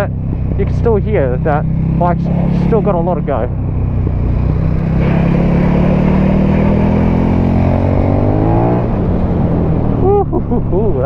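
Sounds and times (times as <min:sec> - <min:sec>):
motorcycle engine accelerating hard: 0:00.0 - 0:11.0.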